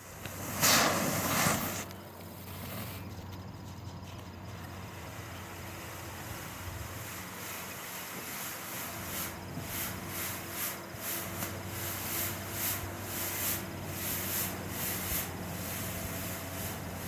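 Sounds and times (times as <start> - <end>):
smoke ball hissing: 0.0 - 17.0.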